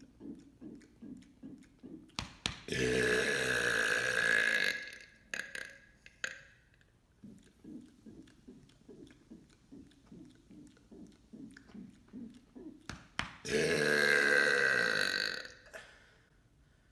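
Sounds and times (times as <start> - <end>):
man burping: 2.7 - 5.8, 13.4 - 16.0
faint low pulses: 7.1 - 13.6.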